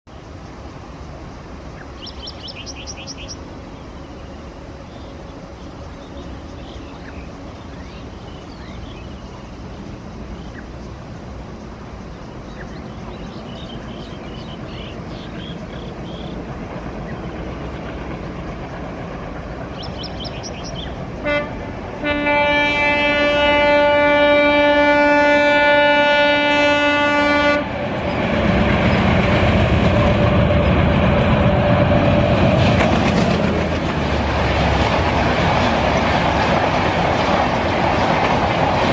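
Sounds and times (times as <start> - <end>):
diesel locomotive engine rumble: 0.1 - 38.9
train wheels passing: 0.2 - 38.9
bird chirps: 1.8 - 3.4, 12.0 - 16.4, 19.7 - 21.0
train horn: 21.2 - 27.8.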